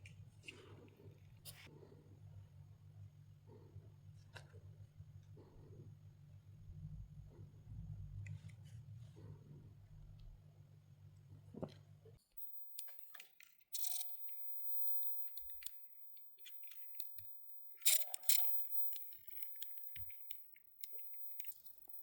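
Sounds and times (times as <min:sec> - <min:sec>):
hand tool clicking and scraping plastic: 0:12.7 - 0:22.0.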